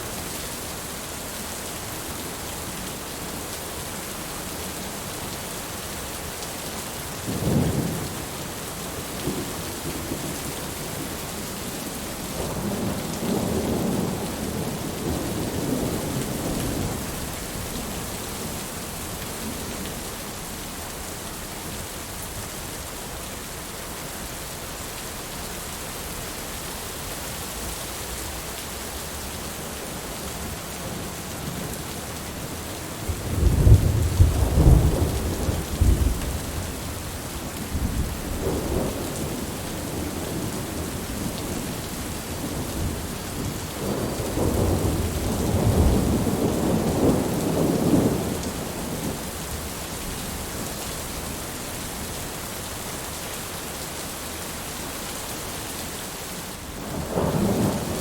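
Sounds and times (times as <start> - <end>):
steady rain falling: 0.0 - 58.0
thunder rumbling: 33.0 - 49.1.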